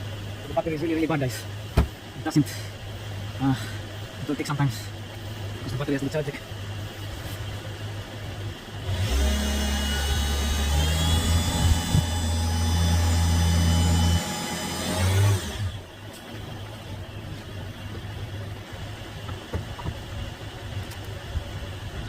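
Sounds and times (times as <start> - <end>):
starter motor cranking engine: 8.7 - 15.9.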